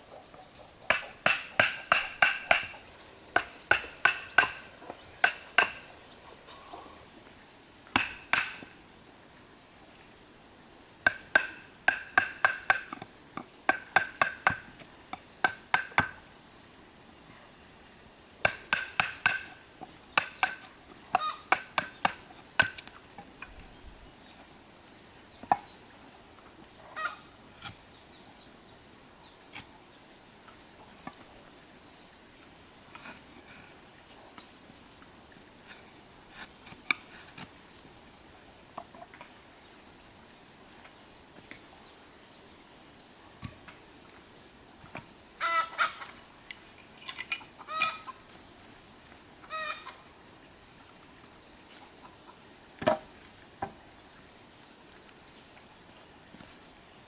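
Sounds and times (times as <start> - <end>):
high insect drone: 0.0 - 57.0
hammer striking wood: 0.9 - 5.9, 8.0 - 8.7, 11.1 - 12.9, 18.5 - 19.5.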